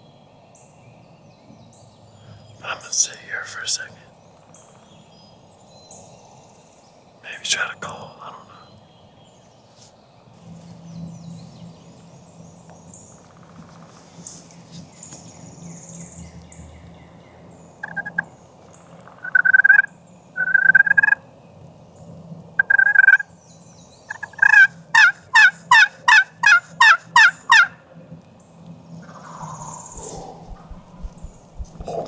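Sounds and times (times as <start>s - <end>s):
turkey call hen yelps: 17.8s - 18.2s, 19.2s - 21.2s, 22.6s - 23.2s, 24.1s - 27.8s.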